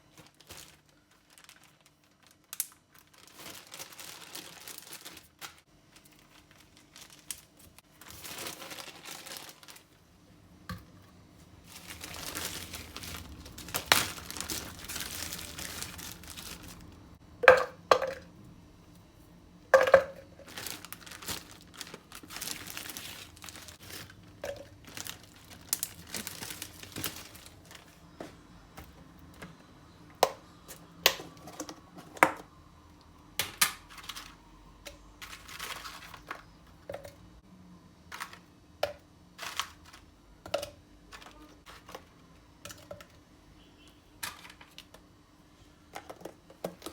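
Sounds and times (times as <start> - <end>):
rustling and crinkling: 0.0 - 10.0, 11.2 - 17.0, 20.4 - 29.6, 33.8 - 36.8.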